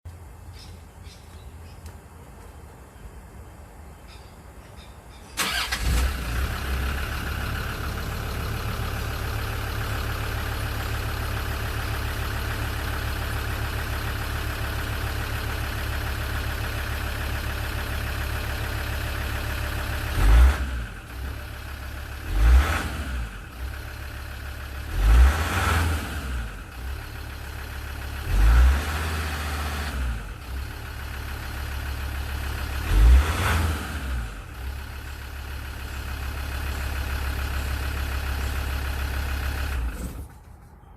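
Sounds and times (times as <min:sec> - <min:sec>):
diesel engine starting and idling: 0:05.3 - 0:40.8
engine revving in short blips: 0:05.4 - 0:08.7, 0:32.8 - 0:34.6.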